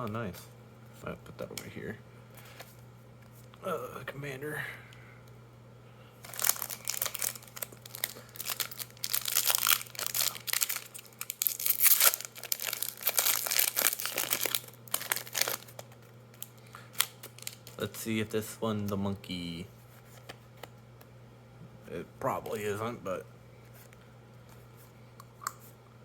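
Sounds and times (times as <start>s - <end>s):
foil wrapper crinkling and tearing: 6.2s - 18.0s.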